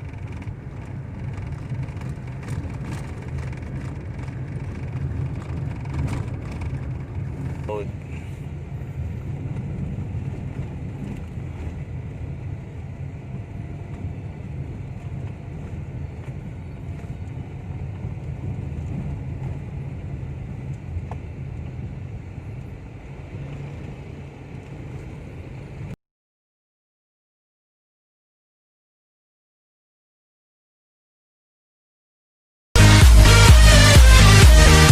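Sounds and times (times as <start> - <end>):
car cabin road and engine rumble: 0.0 - 26.0.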